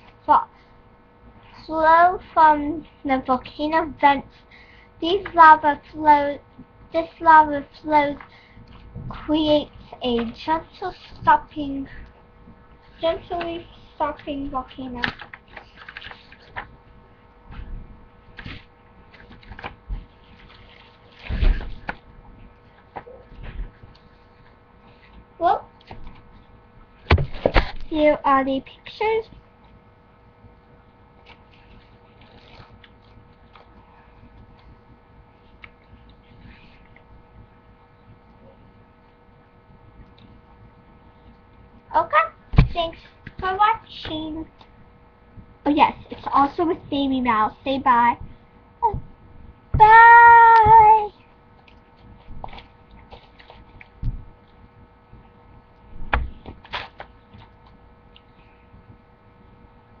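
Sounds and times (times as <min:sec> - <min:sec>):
steady electrical hum: 0:00.0 - 1:00.0
dull thump: 0:42.5 - 0:42.8.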